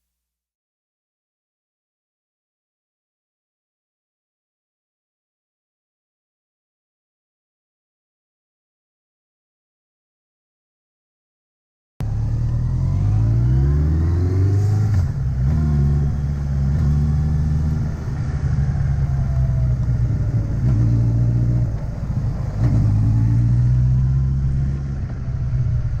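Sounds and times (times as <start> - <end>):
vehicle engine under load: 12.0 - 26.0.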